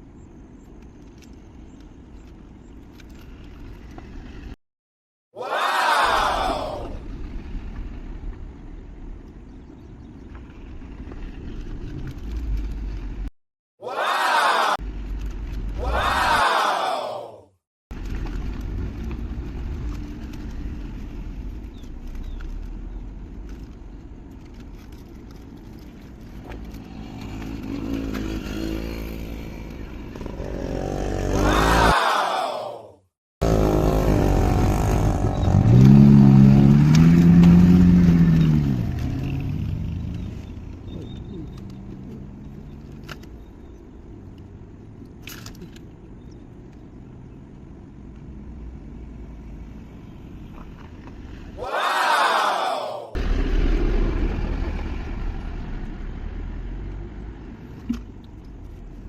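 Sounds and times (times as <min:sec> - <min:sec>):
vehicle engine rumble: 0:00.0 - 0:04.6, 0:06.9 - 0:13.3, 0:14.8 - 0:16.1, 0:17.9 - 0:31.3, 0:33.4 - 0:51.6, 0:53.2 - 0:59.0
vehicle engine revving: 0:33.4 - 0:40.6.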